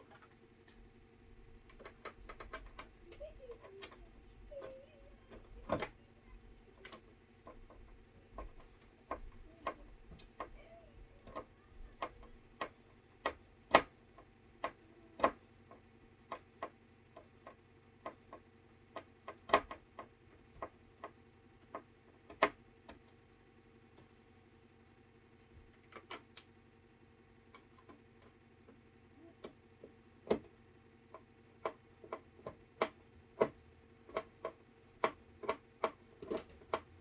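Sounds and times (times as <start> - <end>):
faint steady hum: 0.0 - 37.0
sharp clicks and taps: 1.6 - 23.0.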